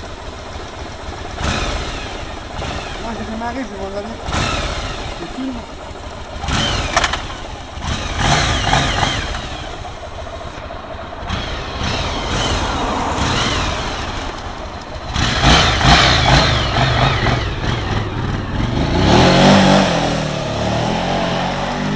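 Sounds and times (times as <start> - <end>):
motorcycle engine revving: 0.0 - 21.9.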